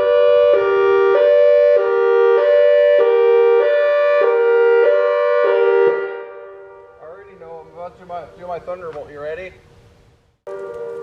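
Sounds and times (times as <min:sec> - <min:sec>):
siren echo: 0:00.0 - 0:07.2, 0:10.5 - 0:11.0
outdoor warning siren hi-lo tone: 0:00.0 - 0:07.4, 0:10.5 - 0:11.0.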